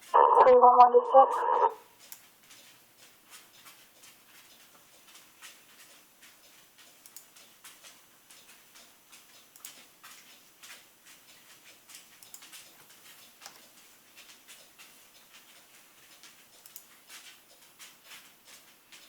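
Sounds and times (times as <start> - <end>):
static clicking and crackling: 0.0 - 19.0.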